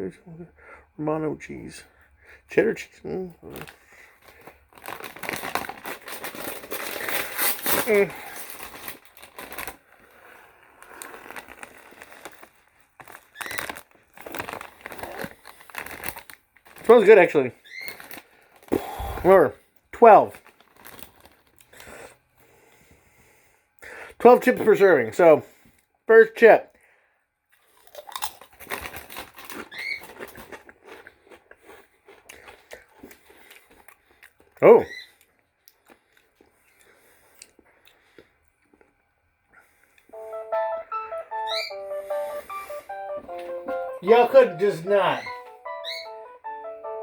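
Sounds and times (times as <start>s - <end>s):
chip bag crinkling: 3.5s - 19.0s, 20.3s - 22.0s, 27.6s - 34.5s.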